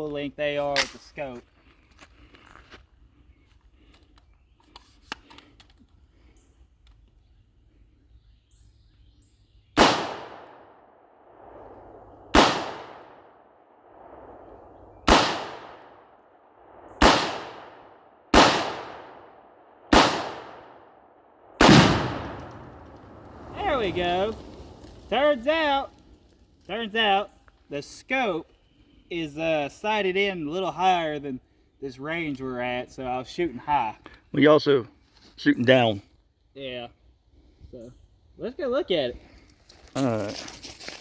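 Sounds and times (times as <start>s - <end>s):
rifle shots with echo: 9.8s - 11.5s, 12.3s - 14.4s, 15.0s - 24.5s
explosive target blast: 21.6s - 24.8s.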